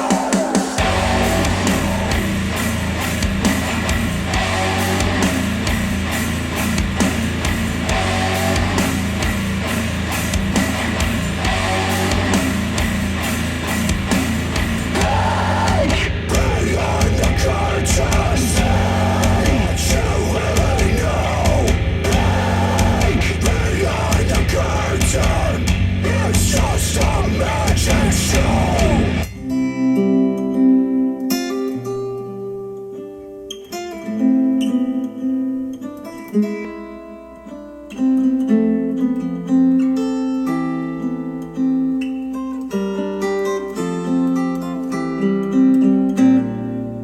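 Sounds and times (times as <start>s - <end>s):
loud song with singing: 0.0s - 29.4s
plucked guitar piece: 29.1s - 47.0s.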